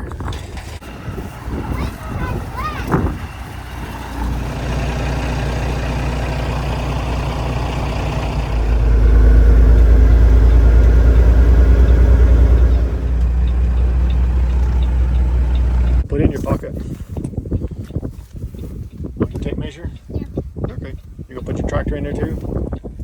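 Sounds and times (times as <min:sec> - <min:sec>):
heavy vehicle engine running: 0:00.4 - 0:16.1.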